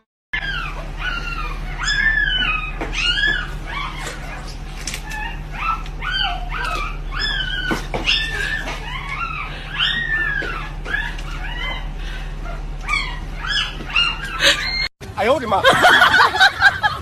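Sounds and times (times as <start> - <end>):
dog whimpering and yipping: 0.4 - 14.9.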